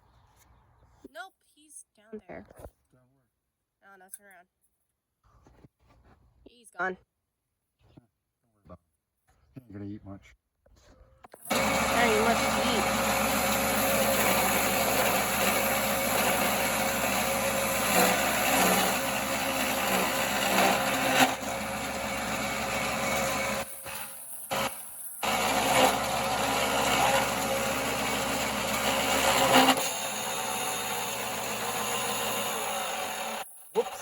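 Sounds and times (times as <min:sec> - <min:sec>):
lathe motor hum: 0:11.4 - 0:34.0
tool scraping spinning wood: 0:11.4 - 0:34.0.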